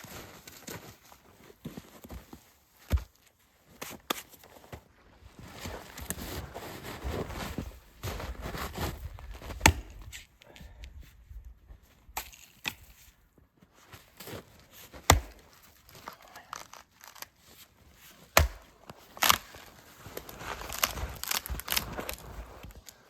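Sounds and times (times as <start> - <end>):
axe chopping wood: 9.4 - 10.1, 15.0 - 15.5, 18.3 - 19.4
wood fibres crackling and tearing: 14.6 - 23.0.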